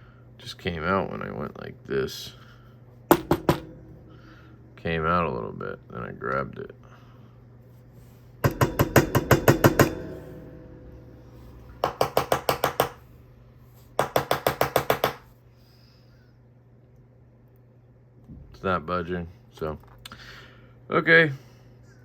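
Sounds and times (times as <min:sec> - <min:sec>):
fidget toy knocking rapidly: 0:11.8 - 0:13.0.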